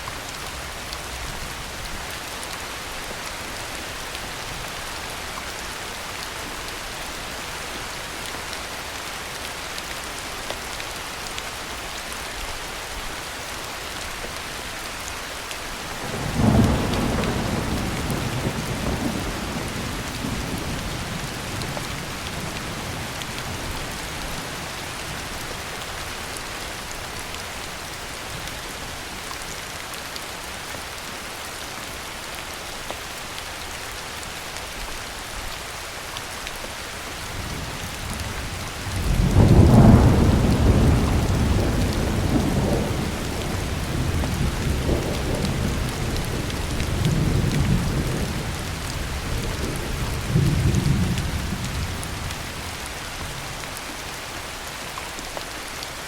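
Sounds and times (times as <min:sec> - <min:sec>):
heavy rain falling: 0:00.0 - 0:56.0
rolling thunder: 0:16.0 - 0:21.8, 0:38.2 - 0:51.9.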